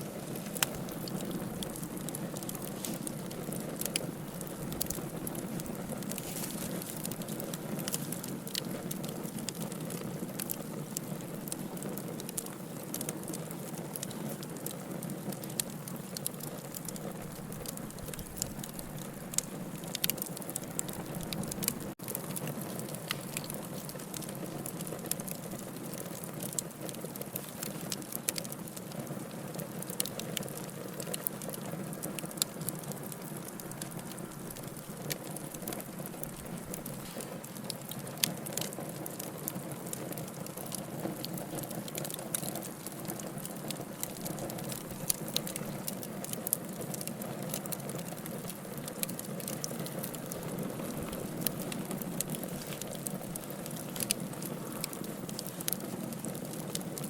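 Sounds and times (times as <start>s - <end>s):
wood fire crackling: 0.0s - 57.0s.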